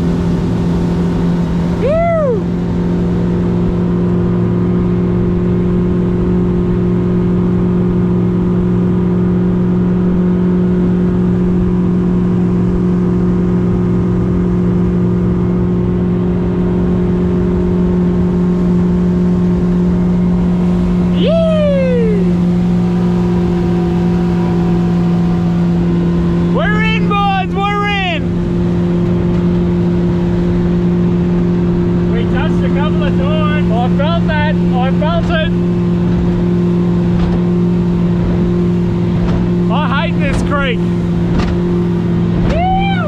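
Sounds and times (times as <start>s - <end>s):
boat engine running: 0.0s - 43.0s
short downward cry: 1.6s - 2.9s, 20.0s - 29.0s, 41.8s - 43.0s.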